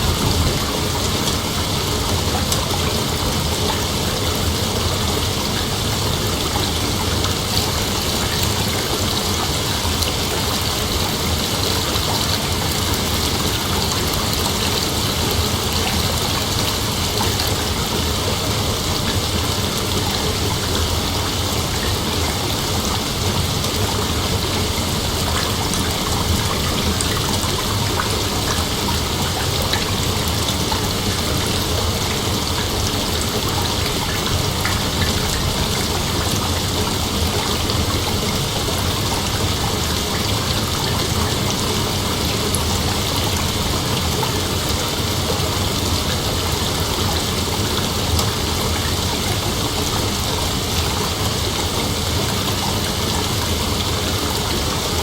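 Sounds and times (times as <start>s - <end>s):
steady rain: 0.0s - 55.0s.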